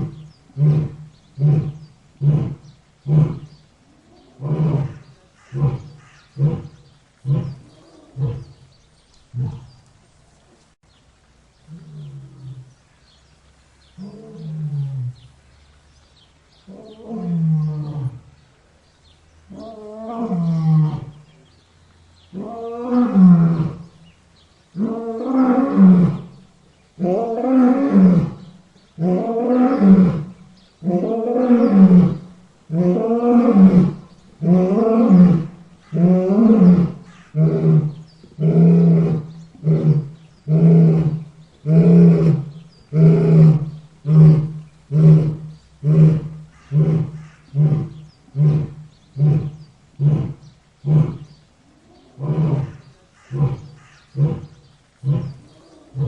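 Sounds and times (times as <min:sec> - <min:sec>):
lion roaring: 0:00.0 - 0:08.6, 0:27.0 - 0:56.0.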